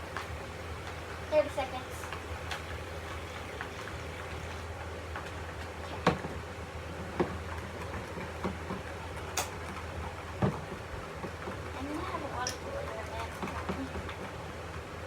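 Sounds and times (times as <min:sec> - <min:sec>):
steady low hum: 0:00.0 - 0:07.2.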